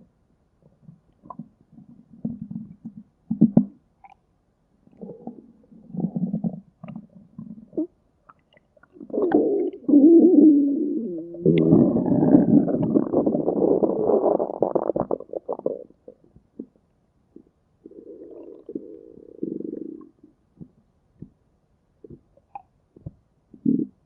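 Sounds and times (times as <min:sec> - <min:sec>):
stomach growling: 0:04.9 - 0:16.8, 0:17.4 - 0:21.3, 0:22.0 - 0:24.0.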